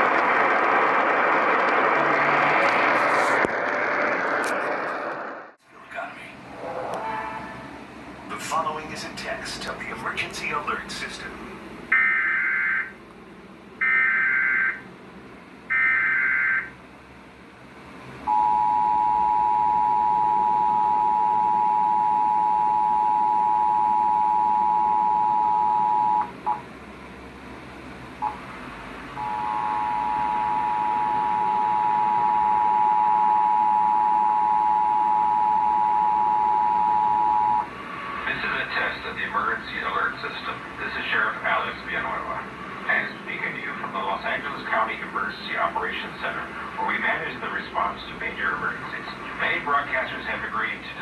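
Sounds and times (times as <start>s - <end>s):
two-tone attention signal: 29.2s - 37.6s.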